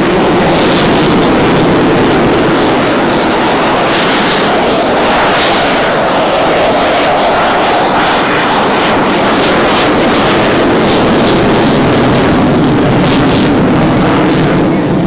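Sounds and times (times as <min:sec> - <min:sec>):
jet noise: 0:00.0 - 0:15.0.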